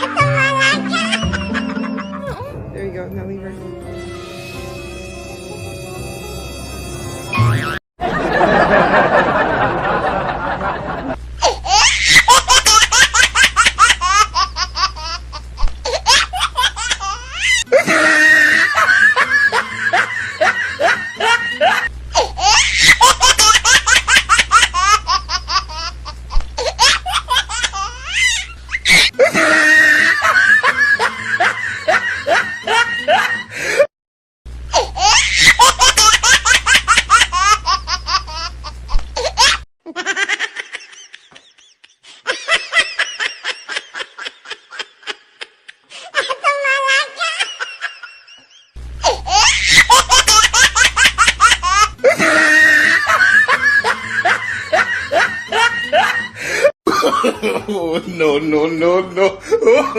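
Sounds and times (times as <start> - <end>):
hearty laughter: 8.0 - 11.2, 17.7 - 21.9, 28.9 - 33.9, 40.0 - 45.8, 49.6 - 58.0, 59.2 - 59.9.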